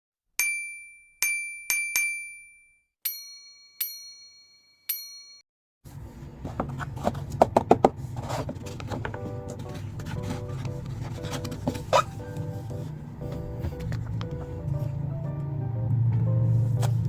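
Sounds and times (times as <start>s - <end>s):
bright bell-like dings: 0.4s - 5.4s.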